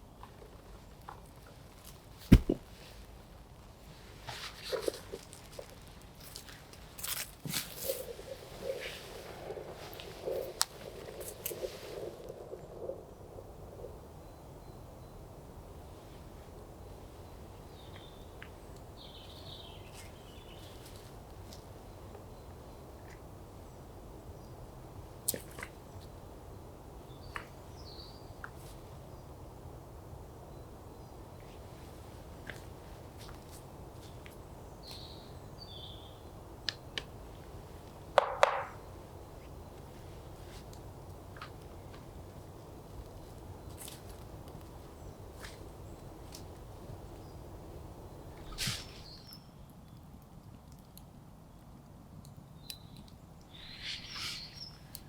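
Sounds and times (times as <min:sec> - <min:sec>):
low rush of background noise: 0:00.0 - 0:55.0
loud sharp cracks: 0:38.2 - 0:38.8
bird chirps: 0:52.7 - 0:55.0.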